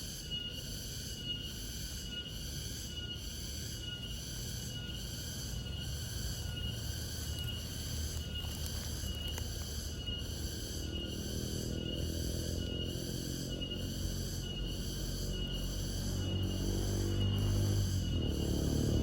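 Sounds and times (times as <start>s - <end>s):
cricket chirping: 0.0s - 19.0s
low outdoor rumble: 3.8s - 19.0s.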